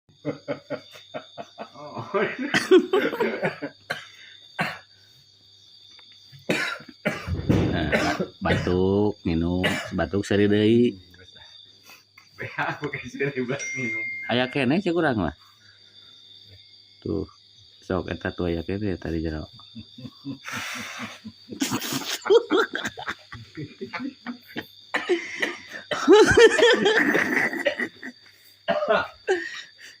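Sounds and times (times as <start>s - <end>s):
man laughing hard: 0.2s - 3.8s, 19.8s - 28.2s
man coughing: 2.4s - 4.8s, 6.5s - 8.8s, 9.6s - 10.0s, 24.9s - 27.9s, 28.7s - 29.5s.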